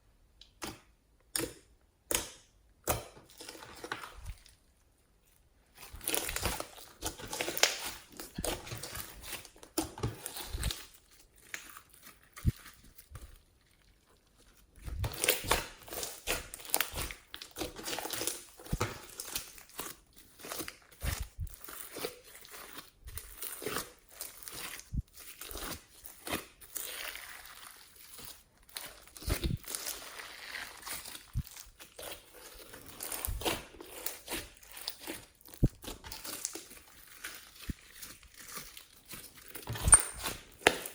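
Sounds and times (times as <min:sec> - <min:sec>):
wet slime crackles and pops: 0:05.8 - 0:13.4.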